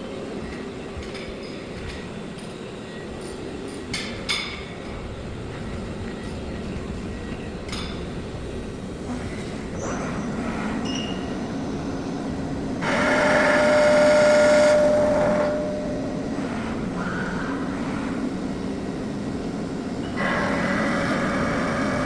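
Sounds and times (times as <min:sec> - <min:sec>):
machine hum: 0:08.2 - 0:22.0
cnc machine cutting whine: 0:09.1 - 0:22.0.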